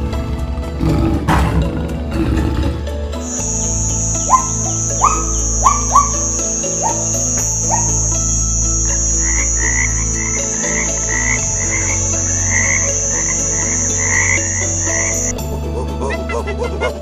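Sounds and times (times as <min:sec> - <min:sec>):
frogs croaking: 0:01.9 - 0:17.0
high insect-like trill: 0:03.2 - 0:15.4.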